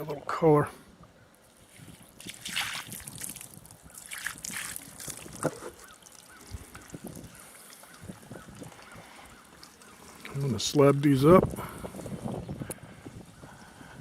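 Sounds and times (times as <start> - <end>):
water splashing onto wood: 1.5 - 11.2.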